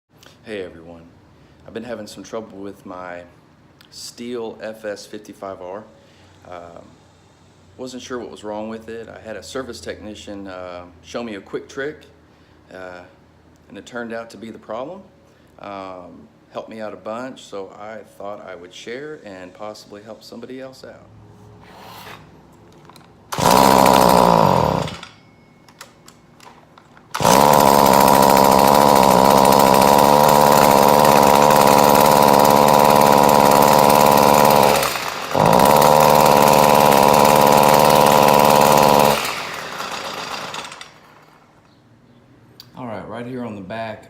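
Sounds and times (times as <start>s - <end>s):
string trimmer engine running: 23.3s - 25.2s, 27.0s - 41.4s.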